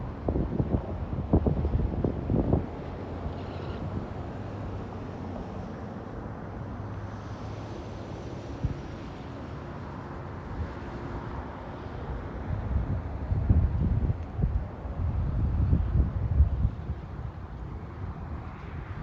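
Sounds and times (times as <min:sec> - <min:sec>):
wind on microphone: 0:00.0 - 0:06.5, 0:07.2 - 0:19.0
distant traffic: 0:00.0 - 0:19.0.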